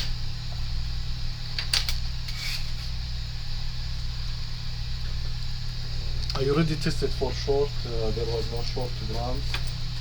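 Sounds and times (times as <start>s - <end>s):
low electrical hum: 0.0s - 10.0s.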